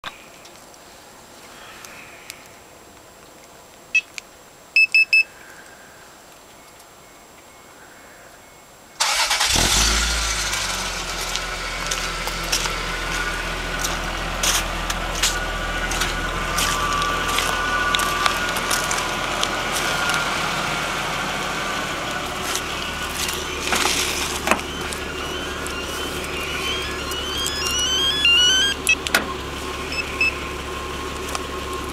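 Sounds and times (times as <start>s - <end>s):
car engine starting and idling: 9.0s - 31.9s.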